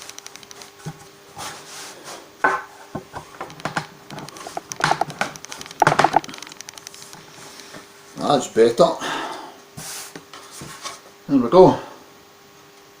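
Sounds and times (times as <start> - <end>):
wooden knocks and clicks: 2.5 - 6.6
wood scraping: 4.2 - 6.3.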